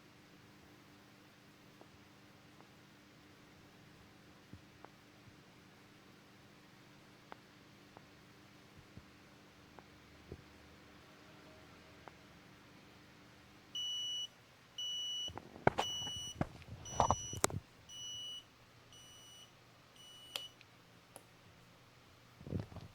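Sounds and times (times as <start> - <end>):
alarm clock buzzer beeping: 16.9 - 18.4, 19.0 - 20.4.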